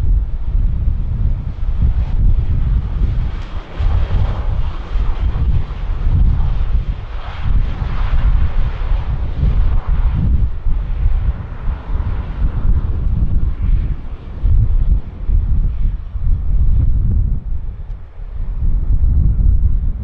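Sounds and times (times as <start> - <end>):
jet engines rushing: 0.0 - 20.0
wind rumble on microphone: 0.0 - 20.0.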